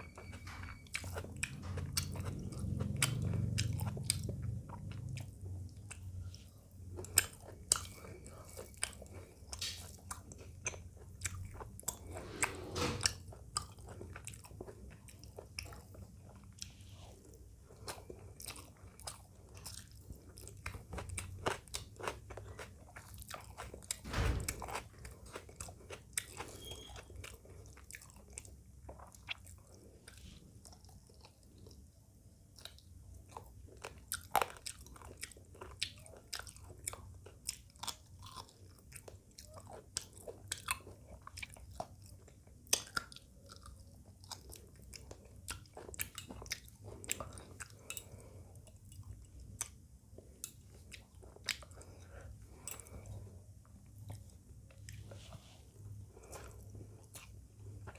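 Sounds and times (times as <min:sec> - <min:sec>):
person chewing and biting food: 0:00.1 - 0:12.4, 0:13.0 - 0:31.8, 0:32.6 - 0:57.9
wet clicks and crunches of eating: 0:06.9 - 0:12.1, 0:32.5 - 0:55.2.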